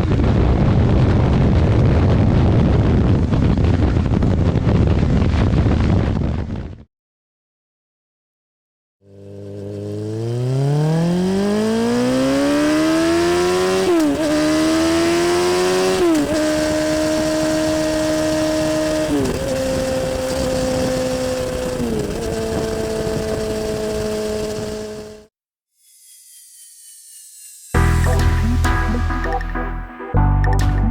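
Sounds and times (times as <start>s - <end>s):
motorcycle engine accelerating: 9.0s - 25.3s.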